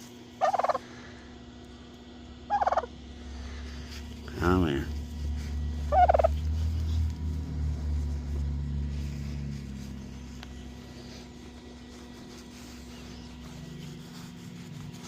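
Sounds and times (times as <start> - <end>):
steady low hum: 0.0 - 15.0
turkey gobbling: 0.4 - 0.8, 2.5 - 2.9, 5.9 - 6.4.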